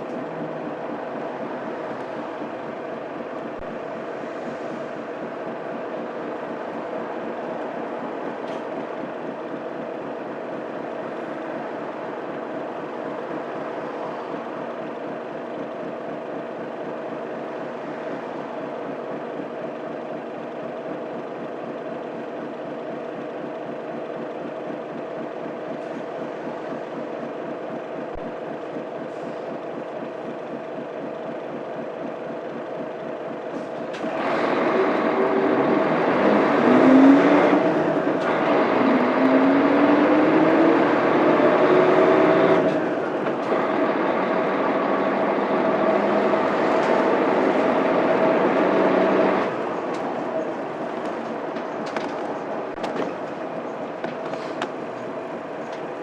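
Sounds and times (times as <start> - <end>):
bus diesel engine: 0.0 - 56.0.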